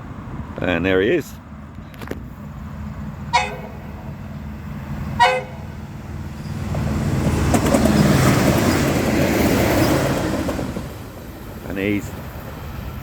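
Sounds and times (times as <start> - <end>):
railcar engine and wheels rumbling: 0.0 - 13.0
train horn toot: 3.3 - 4.0, 5.2 - 5.8.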